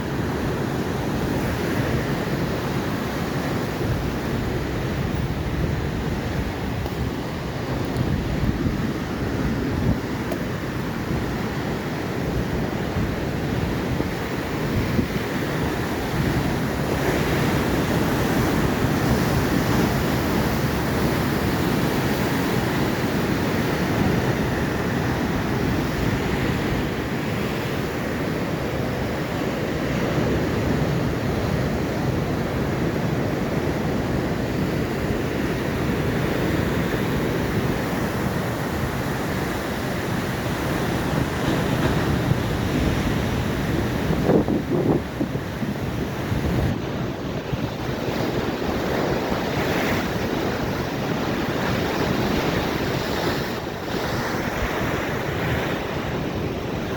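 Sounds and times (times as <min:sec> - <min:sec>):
ocean surf roaring: 0:00.0 - 0:56.9
wind buffeting microphone: 0:00.0 - 0:56.9.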